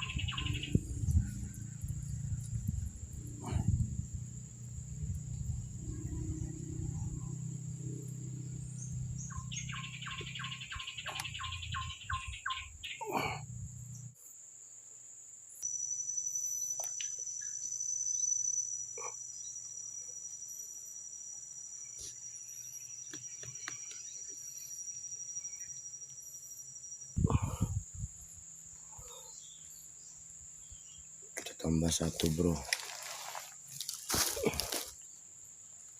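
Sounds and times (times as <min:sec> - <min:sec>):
evenly spaced chirps: 0:09.2 - 0:13.0
insects shrilling: 0:15.5 - 0:35.9.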